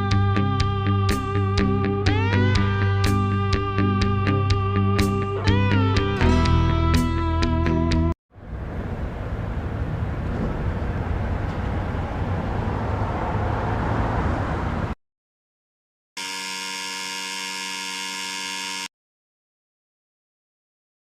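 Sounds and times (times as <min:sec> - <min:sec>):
harsh buzzing alert tone: 0:16.2 - 0:18.9.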